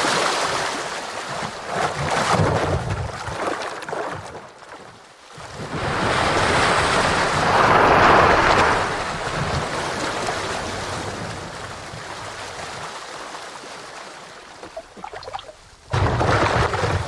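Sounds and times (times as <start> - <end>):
rushing water: 5.4 - 17.0
small bubbly pops: 14.6 - 17.0.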